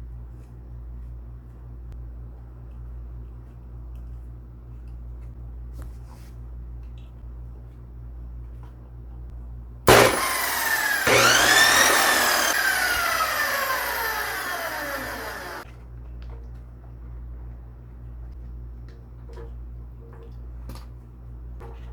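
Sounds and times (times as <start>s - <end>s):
cut-off saw whining: 9.9s - 15.6s.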